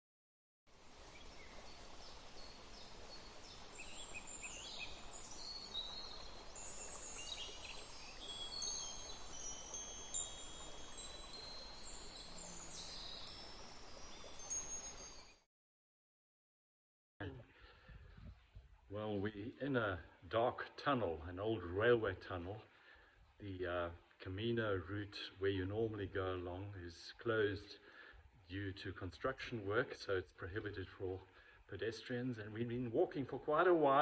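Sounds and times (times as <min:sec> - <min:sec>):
steady low hiss: 0:00.8 - 0:15.3
bird calls: 0:03.8 - 0:15.3
wind chimes tinkling: 0:05.4 - 0:15.4.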